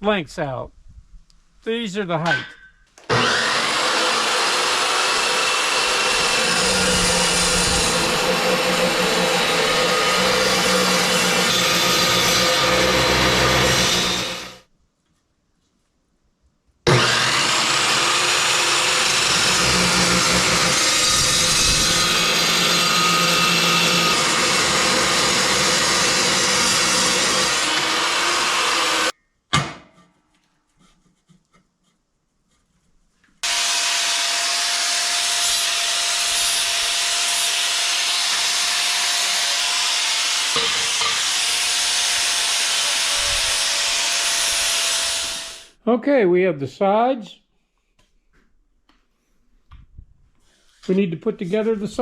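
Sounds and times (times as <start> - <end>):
power saw cutting metal: 3.1 - 14.6, 16.9 - 29.1, 33.4 - 45.8.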